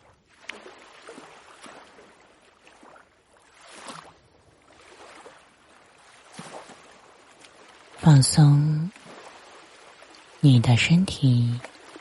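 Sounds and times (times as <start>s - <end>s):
ocean waves washing gently: 0.0s - 12.0s.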